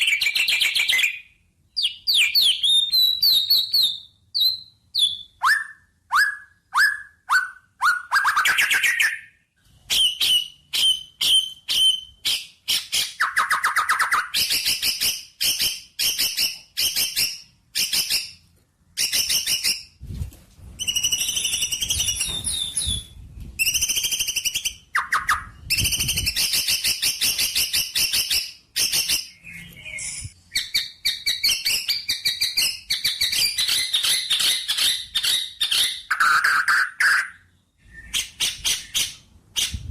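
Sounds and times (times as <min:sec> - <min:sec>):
songbird chirping and trilling: 0:00.0 - 0:20.0, 0:20.8 - 0:39.9.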